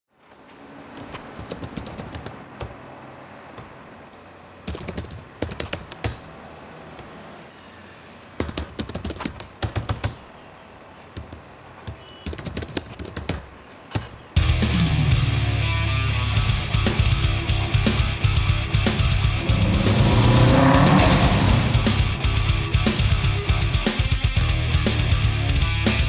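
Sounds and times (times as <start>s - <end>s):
rapid sharp clicking: 1.0s - 2.8s, 3.6s - 6.2s, 8.4s - 10.2s, 11.2s - 13.5s
loud music: 14.4s - 26.0s.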